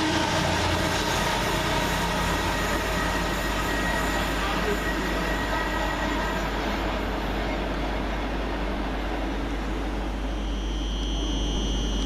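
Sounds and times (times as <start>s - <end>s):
train wheels rushing: 0.0s - 7.5s
high whine: 8.2s - 12.0s.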